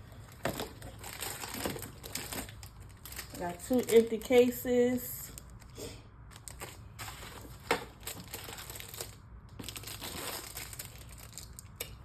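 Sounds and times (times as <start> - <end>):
packaging crinkling and rustling: 0.1 - 12.0.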